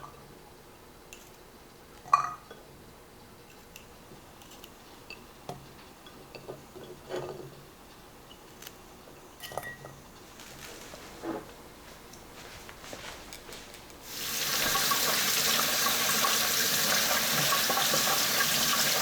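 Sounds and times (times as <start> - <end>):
kitchenware clink with ring: 2.1 - 2.6, 9.4 - 10.0.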